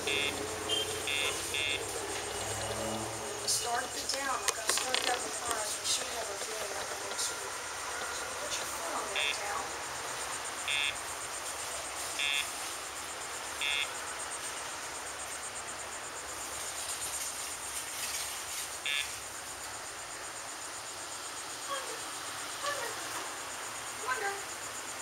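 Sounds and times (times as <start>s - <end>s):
crickets chirping: 0.0s - 25.0s
short electronic beeps: 0.1s - 1.9s, 9.2s - 9.4s, 10.7s - 11.0s, 12.2s - 12.5s, 13.6s - 13.9s, 18.9s - 19.1s.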